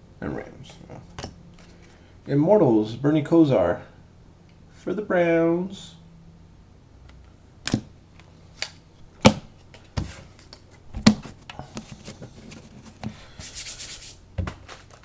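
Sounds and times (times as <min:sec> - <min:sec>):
trading cards rubbing and sliding: 0:11.6 - 0:15.0.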